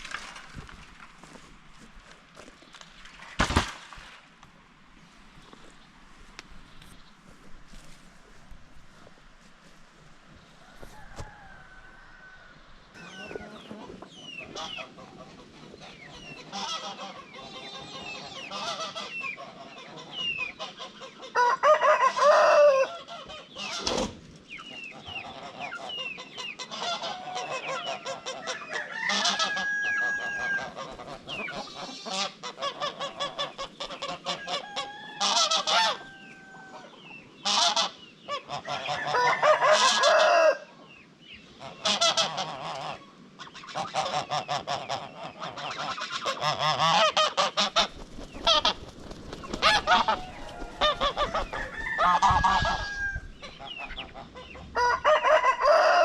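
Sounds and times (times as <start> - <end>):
soft continuous bird calls: 5.0 - 21.4, 22.2 - 56.0
loud poultry calls: 10.6 - 24.2, 24.8 - 40.9, 41.5 - 56.0.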